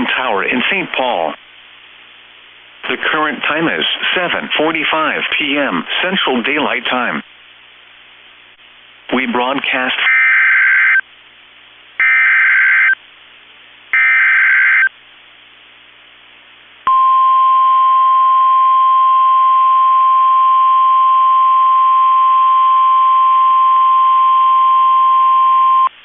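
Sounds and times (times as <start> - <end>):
screeching digital header bursts: 12.0 - 13.0, 14.0 - 14.9
steady warning alarm tone: 12.0 - 13.0, 14.0 - 14.9.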